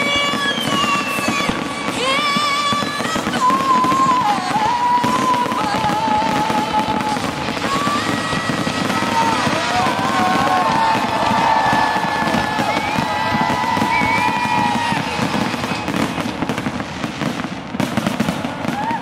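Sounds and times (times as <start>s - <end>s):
fireworks crackling: 0.0s - 19.0s
high whistling fireworks: 0.0s - 19.0s.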